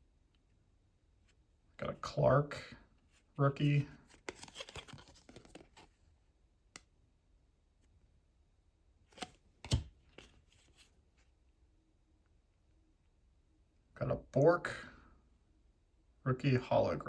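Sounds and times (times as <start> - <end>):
trading cards rustling and sliding: 3.5 - 6.0.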